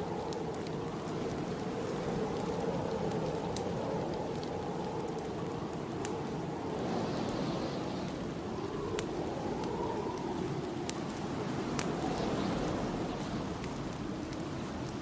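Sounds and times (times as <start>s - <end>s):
wind howling: 0.0s - 15.0s
wood fire crackling: 0.0s - 15.0s.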